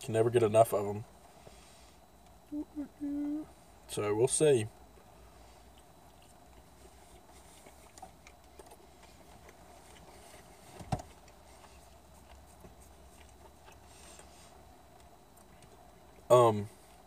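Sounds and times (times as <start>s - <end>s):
low room hum: 0.0s - 17.0s
person chewing: 5.6s - 15.8s.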